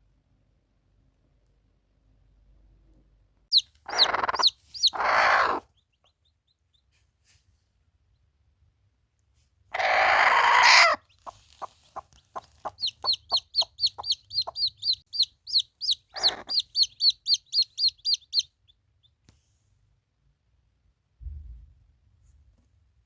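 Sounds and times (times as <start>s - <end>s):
chicken clucking: 3.5s - 5.8s, 9.8s - 18.5s
chicken squawking: 3.5s - 5.8s, 9.7s - 18.5s
chicks peeping: 3.5s - 6.9s, 9.8s - 19.2s.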